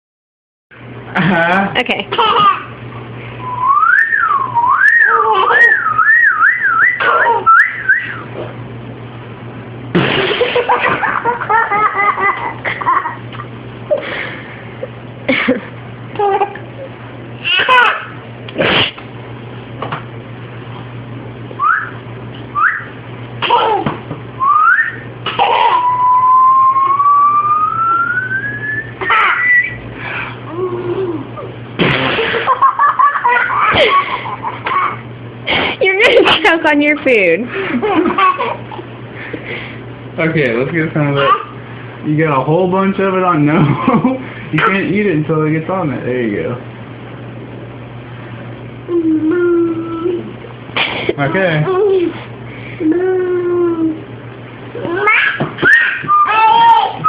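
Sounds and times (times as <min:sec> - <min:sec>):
person whistling swooping note: 0:03.4 - 0:08.2, 0:25.8 - 0:29.8
vocal noise bursts: 0:18.5 - 0:19.0, 0:31.8 - 0:32.5.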